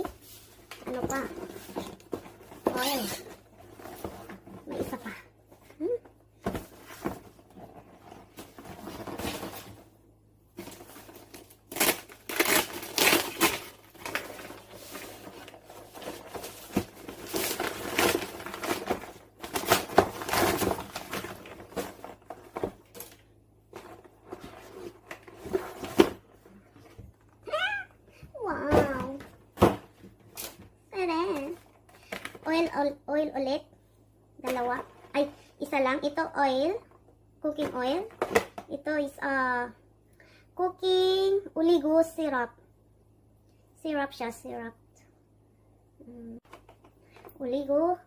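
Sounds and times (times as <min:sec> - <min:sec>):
plastic and cardboard rustling: 0:00.0 - 0:27.8, 0:28.4 - 0:32.8.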